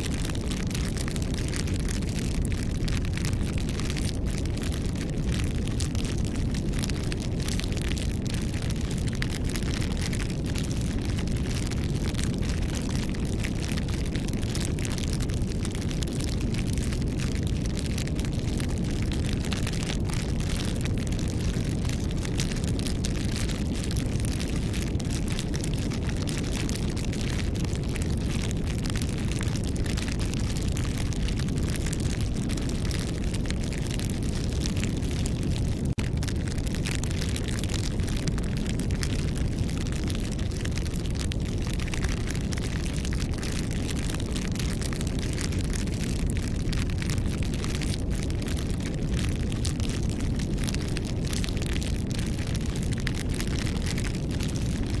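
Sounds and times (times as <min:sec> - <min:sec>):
campfire crackling and popping: 0:00.0 - 0:55.0.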